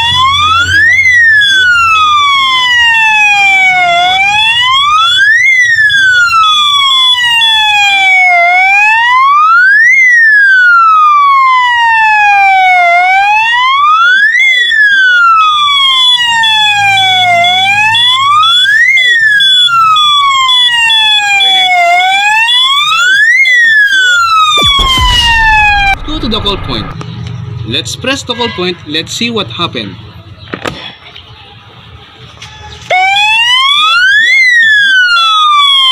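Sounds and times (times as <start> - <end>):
fire alarm siren sweeping: 0.0 - 27.0, 32.9 - 35.9.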